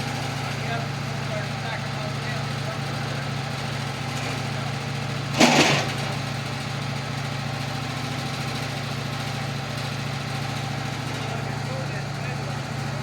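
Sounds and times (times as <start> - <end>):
small engine idling: 0.0 - 13.0
loud sudden clatter: 5.3 - 6.6.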